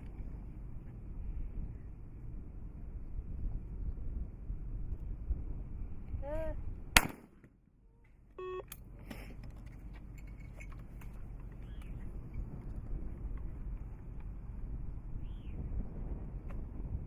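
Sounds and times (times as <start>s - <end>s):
wind rumble on microphone: 0.0s - 7.2s, 9.4s - 17.0s
shotgun shot: 7.0s - 7.5s
short electronic beep: 8.4s - 8.7s.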